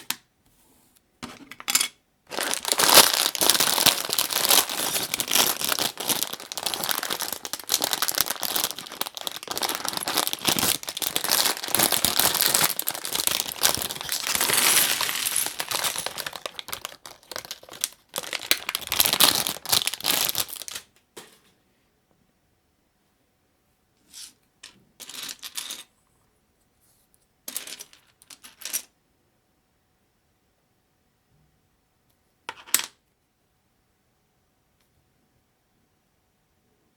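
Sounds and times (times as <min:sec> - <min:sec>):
packaging crinkling and rustling: 0:02.3 - 0:20.9.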